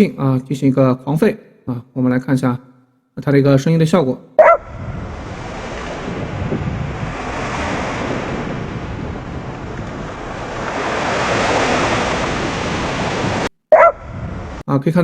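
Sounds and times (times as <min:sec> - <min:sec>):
ocean waves washing: 0:04.4 - 0:14.6.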